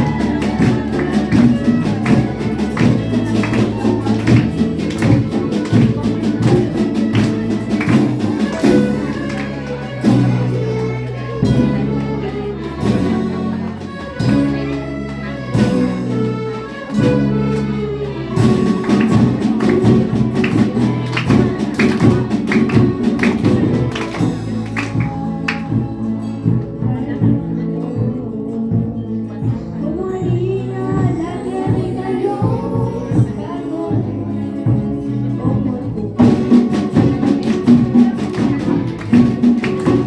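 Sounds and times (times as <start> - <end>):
percussion strikes: 0.0 - 28.1, 28.8 - 40.0
orchestra held low notes: 0.0 - 40.0.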